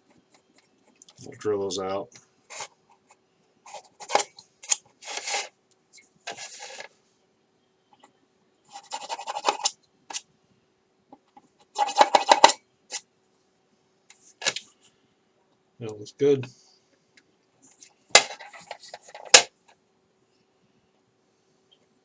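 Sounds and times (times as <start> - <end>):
hand drill scraping plastic: 3.7 - 5.5, 6.3 - 6.9.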